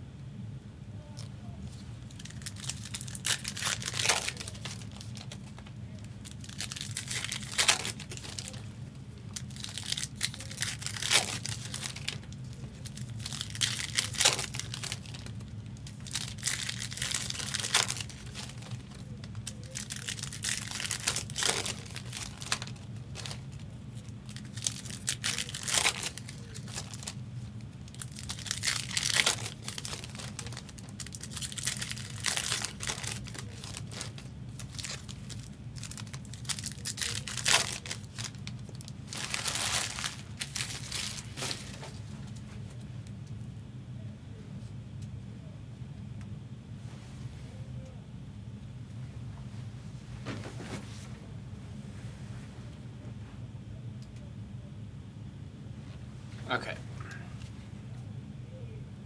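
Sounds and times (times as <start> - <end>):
steady low hum: 0.0 - 59.0
foil wrappers torn and crinkled: 2.0 - 42.4.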